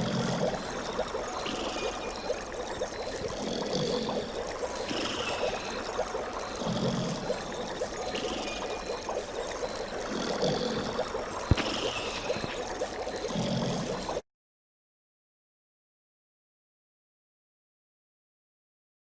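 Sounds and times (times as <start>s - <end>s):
running water: 0.0s - 14.2s.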